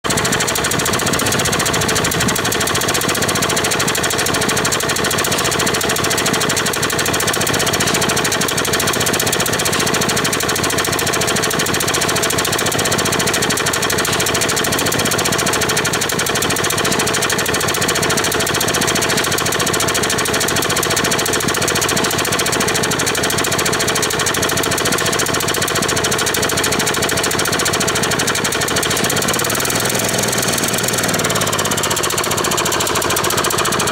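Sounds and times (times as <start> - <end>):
lawn mower engine running: 0.0 - 33.9.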